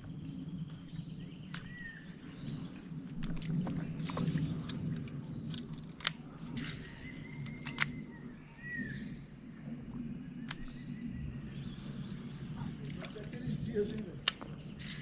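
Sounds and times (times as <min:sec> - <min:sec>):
faint high whine: 0:00.0 - 0:15.0
low hum: 0:00.0 - 0:15.0
sharp clicks and knocks: 0:13.9 - 0:14.7.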